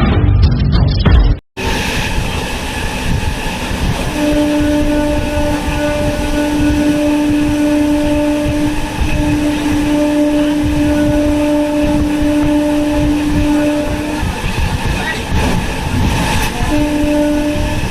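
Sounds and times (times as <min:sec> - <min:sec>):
train running on rails: 0:01.6 - 0:17.9
train horn: 0:04.0 - 0:14.6, 0:16.3 - 0:17.9.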